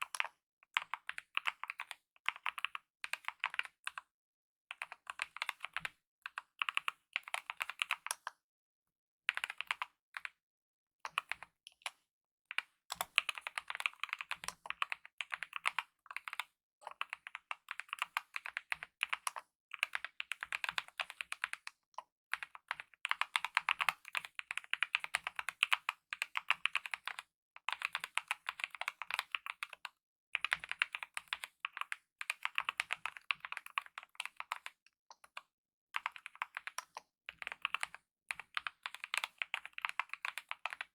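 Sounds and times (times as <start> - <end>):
mechanical keyboard typing: 0.0 - 3.8, 12.9 - 21.7, 22.3 - 35.4, 36.0 - 40.9.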